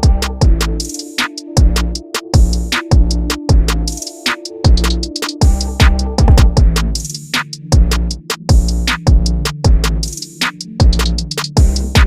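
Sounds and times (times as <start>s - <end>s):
deep bass kicks: 0.0s - 0.9s, 1.6s - 3.9s, 4.7s - 7.0s, 7.8s - 10.1s, 10.8s - 12.0s.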